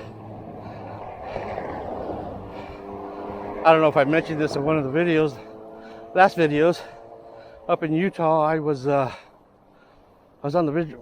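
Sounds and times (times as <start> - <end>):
car passing by: 0.0 - 7.9
road traffic: 0.0 - 11.0.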